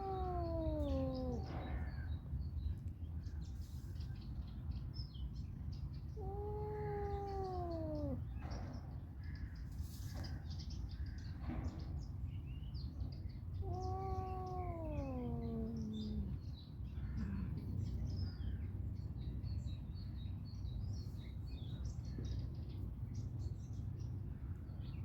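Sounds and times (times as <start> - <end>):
cat meowing: 0.0 - 2.0, 6.2 - 8.3, 13.6 - 16.4.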